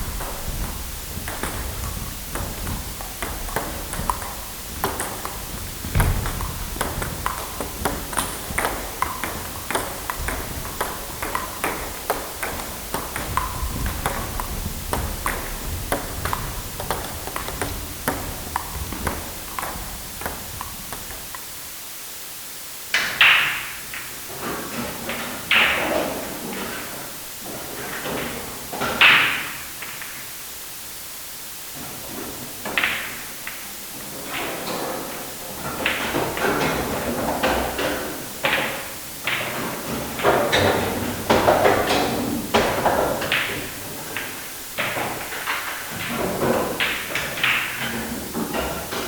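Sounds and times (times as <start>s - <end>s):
balls struck and bouncing: 0.0s - 21.6s, 35.8s - 49.0s.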